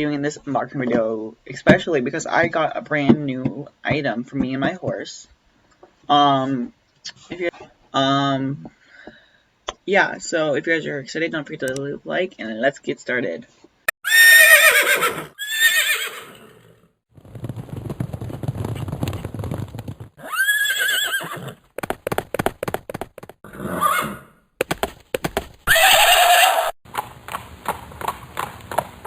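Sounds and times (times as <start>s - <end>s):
horse whinnying: 14.0s - 16.8s, 20.2s - 21.7s, 23.4s - 24.4s, 25.6s - 26.8s
hooves clip-clopping: 17.2s - 23.4s, 24.6s - 26.2s, 26.9s - 29.0s.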